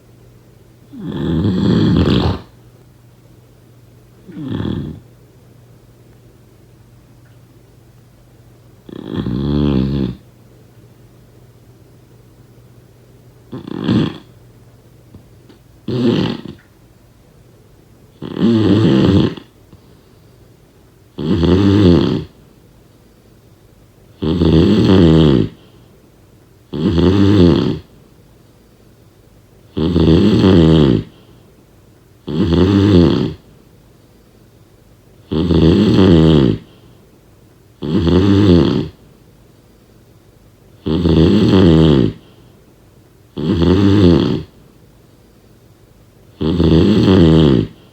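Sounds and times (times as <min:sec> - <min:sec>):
loud snoring: 0:00.9 - 0:02.6, 0:04.3 - 0:05.0, 0:08.9 - 0:10.2, 0:13.5 - 0:14.3, 0:15.8 - 0:16.6, 0:18.2 - 0:19.6, 0:21.2 - 0:22.4, 0:24.2 - 0:25.7, 0:26.7 - 0:27.9, 0:29.7 - 0:31.3, 0:32.2 - 0:33.5, 0:35.2 - 0:36.7, 0:37.8 - 0:39.0, 0:40.8 - 0:42.3, 0:43.4 - 0:44.6, 0:46.4 - 0:47.9.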